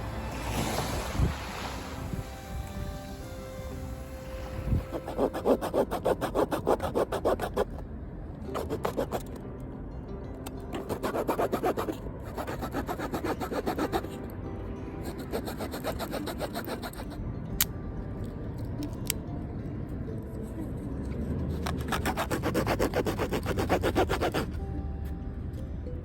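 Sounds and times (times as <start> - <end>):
hand saw cutting wood: 4.9 - 7.7, 8.5 - 9.2, 10.8 - 14.2, 15.0 - 17.2, 21.7 - 24.6.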